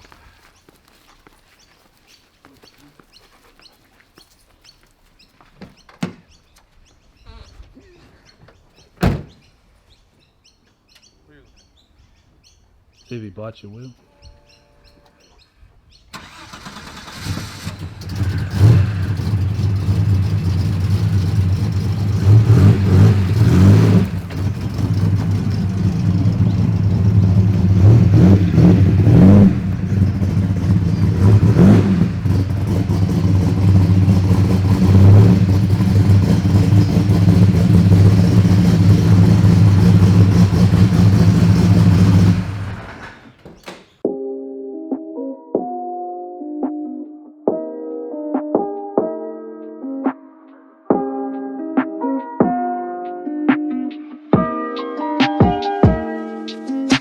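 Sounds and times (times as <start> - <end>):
car engine starting and idling: 16.1 - 43.8
engine revving: 16.2 - 43.4.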